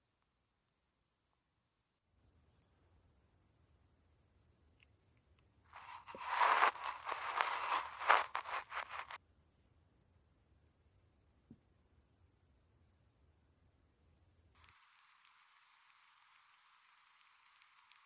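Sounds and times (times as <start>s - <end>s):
crinkling and crackling: 5.7s - 9.2s
faint clicks: 14.6s - 18.0s.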